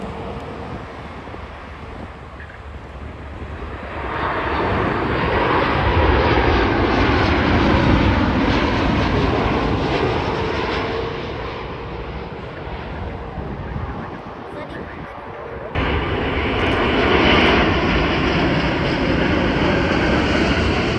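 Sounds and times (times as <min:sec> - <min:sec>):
jet airliner passing by: 0:00.0 - 0:20.9.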